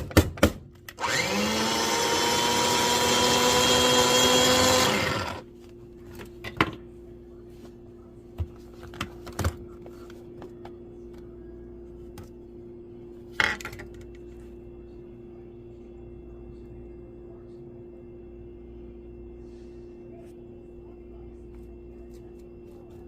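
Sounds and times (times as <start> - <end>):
faint steady hum: 0.6 - 23.0
electric chopper running: 1.0 - 5.4.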